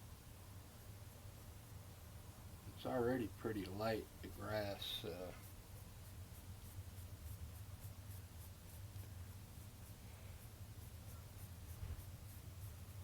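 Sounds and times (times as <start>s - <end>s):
low steady hum: 0.0s - 13.0s
paintbrush strokes on canvas: 2.8s - 13.0s.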